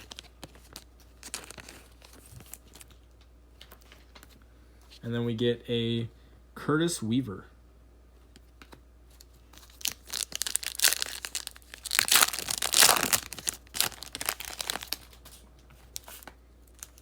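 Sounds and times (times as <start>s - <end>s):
wrapper crinkling: 0.0s - 3.0s, 9.6s - 17.0s.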